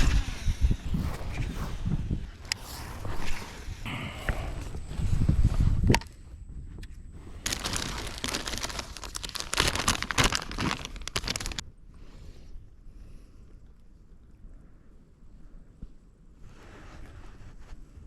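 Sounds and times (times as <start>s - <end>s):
small crackles and clicks: 6.8s - 11.6s
rustling handling noise: 7.2s - 11.6s.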